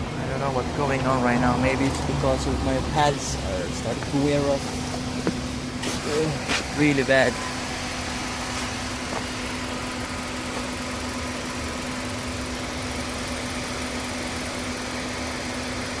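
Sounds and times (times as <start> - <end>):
car engine and road noise: 0.0 - 16.0.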